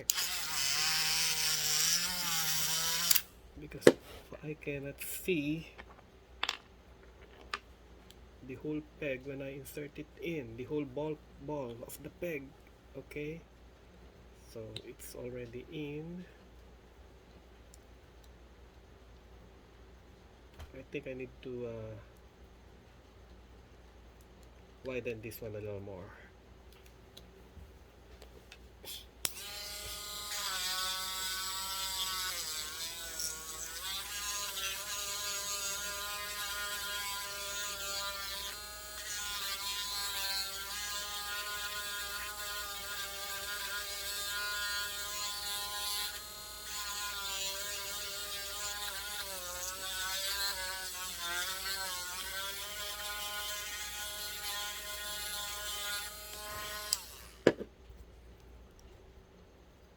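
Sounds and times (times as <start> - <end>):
rotary sanding tool whining: 0.0 - 3.3, 29.3 - 57.6.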